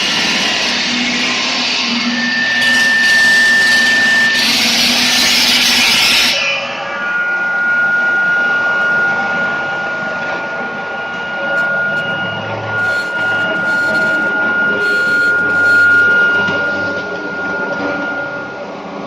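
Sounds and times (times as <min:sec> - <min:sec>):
stone cutting blade hiss: 0:00.0 - 0:06.4
machine high whine: 0:00.0 - 0:19.0.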